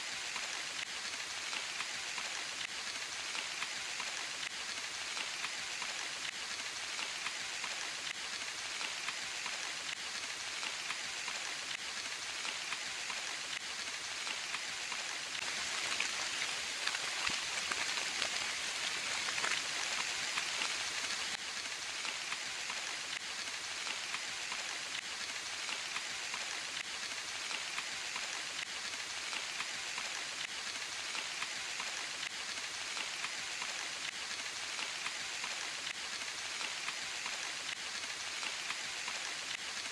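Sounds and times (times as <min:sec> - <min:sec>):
rain falling in forest: 0:00.0 - 0:39.9.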